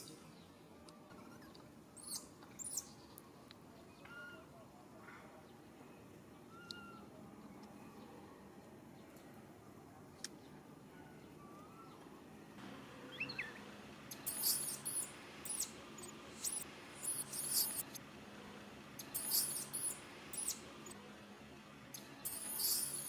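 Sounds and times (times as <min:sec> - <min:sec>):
baby monkey squealing: 0:14.1 - 0:15.7, 0:16.4 - 0:17.8, 0:19.0 - 0:20.6, 0:22.3 - 0:23.0.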